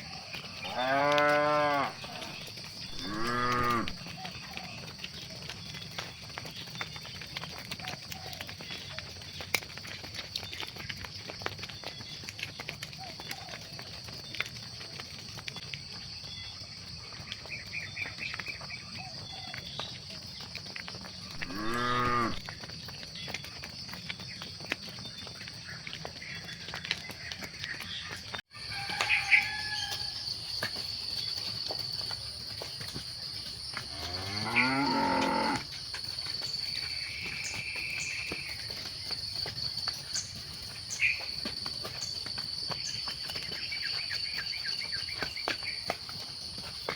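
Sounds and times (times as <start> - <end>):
insects chirring: 0.0 - 5.0, 20.6 - 24.4, 28.6 - 46.9
cow mooing: 0.7 - 4.0, 21.4 - 22.4, 33.9 - 35.6.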